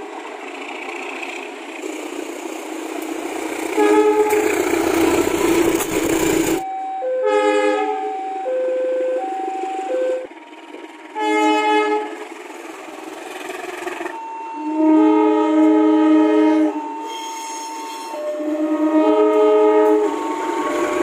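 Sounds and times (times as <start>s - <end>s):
passing train rumble: 0.0s - 21.0s
train horn chord: 3.7s - 8.2s, 11.1s - 12.4s, 14.5s - 21.0s
two-note train horn: 3.7s - 10.3s, 11.1s - 12.3s, 14.4s - 21.0s.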